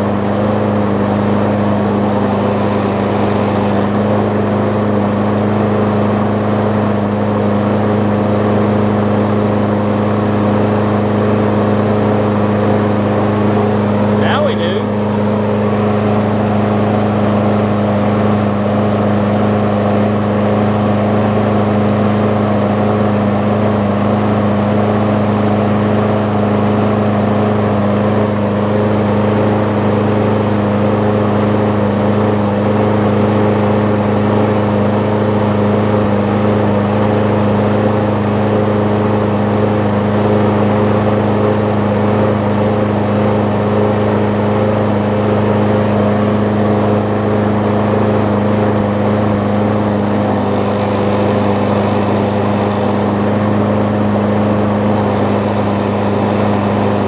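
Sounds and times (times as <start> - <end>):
mower engine running steadily: 0.0 - 57.0.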